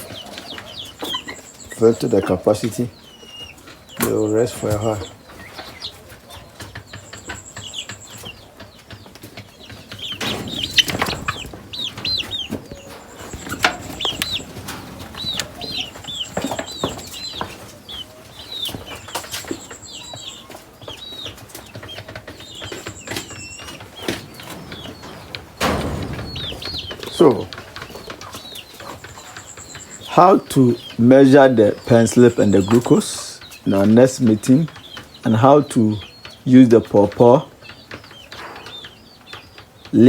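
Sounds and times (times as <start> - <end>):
chickens peeping and clucking: 0.0 - 40.0
wings flapping: 8.9 - 19.6.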